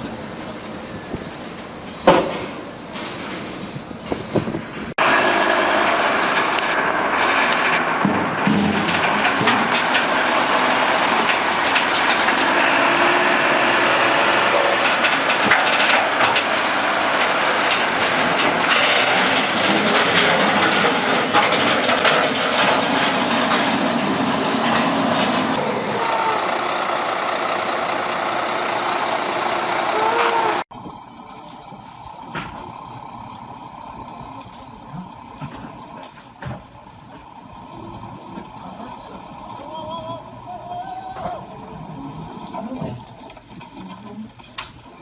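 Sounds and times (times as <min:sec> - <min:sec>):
heavy vehicle engine running: 0:00.0 - 0:45.0
knocks and rattles: 0:01.8 - 0:05.0, 0:07.5 - 0:12.6, 0:14.5 - 0:25.5.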